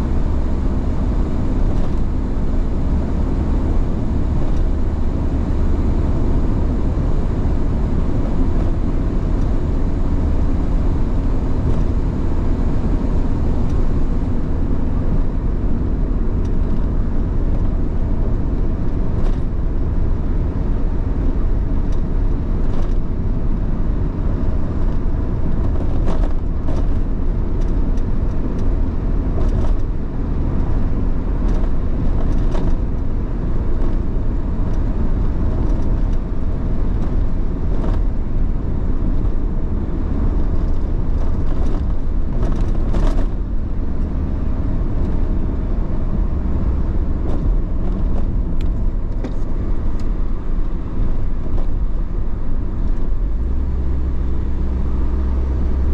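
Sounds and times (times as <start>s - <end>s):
car driving on road: 0.0s - 55.9s.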